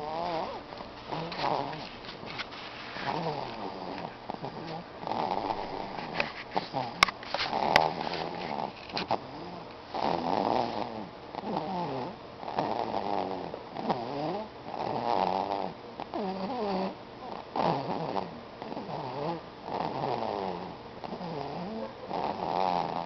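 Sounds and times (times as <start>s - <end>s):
baby snoring: 0.0s - 2.4s, 3.0s - 23.0s.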